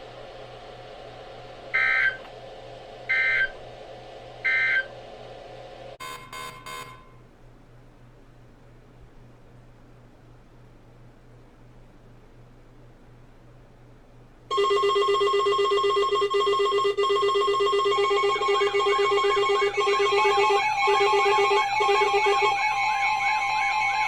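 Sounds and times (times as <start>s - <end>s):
warbling electronic chirp: 1.7s - 2.3s, 3.1s - 3.7s, 4.4s - 5.0s, 17.8s - 24.0s
steady electronic alarm tones: 1.7s - 2.4s, 3.0s - 5.2s, 6.0s - 7.2s, 14.5s - 24.0s.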